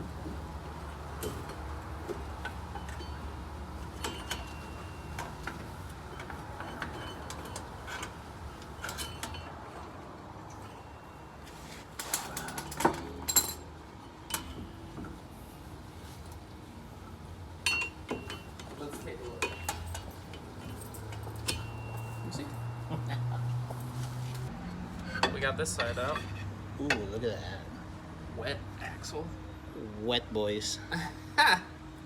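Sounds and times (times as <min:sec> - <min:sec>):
metal tools clinking: 0:03.9 - 0:09.8, 0:12.0 - 0:13.7, 0:17.7 - 0:23.1
metal clanks: 0:03.9 - 0:09.9, 0:17.6 - 0:22.8.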